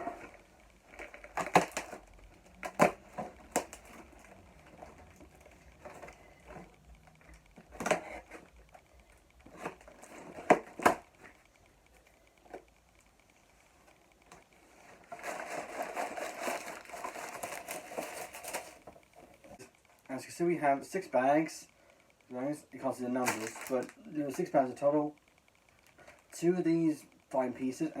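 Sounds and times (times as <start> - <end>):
cardboard box crunching: 15.1 - 18.8.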